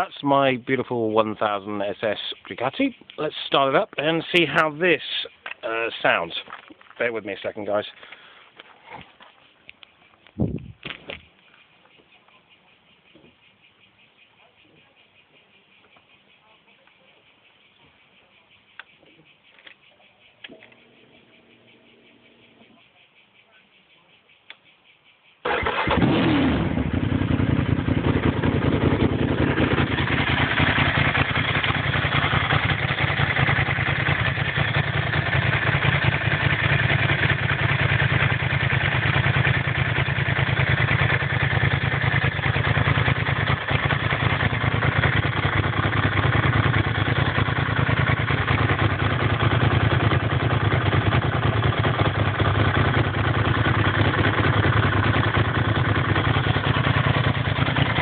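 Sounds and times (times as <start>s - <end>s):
motorcycle engine starting and idling: 20.4s - 22.9s, 25.4s - 58.0s.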